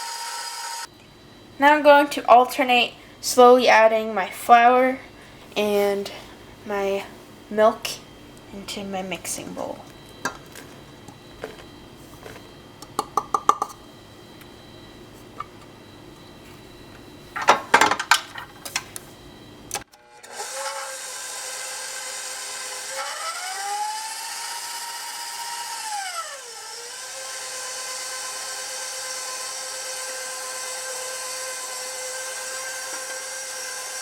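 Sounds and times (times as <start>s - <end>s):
electric mixer whine: 0.0s - 1.5s, 9.8s - 17.2s, 20.0s - 34.0s.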